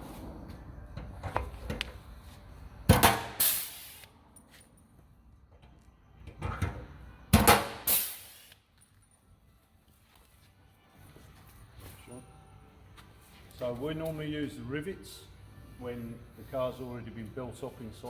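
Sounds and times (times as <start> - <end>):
rivet gun snap and hiss: 3.1 - 4.2, 7.7 - 8.7.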